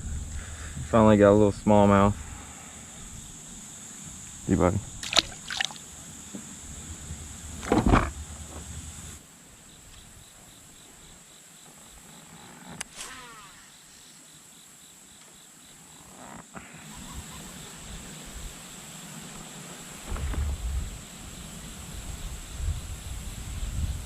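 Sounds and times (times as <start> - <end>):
insects buzzing high-pitched: 0.0 - 24.0
low rumble: 5.8 - 9.2.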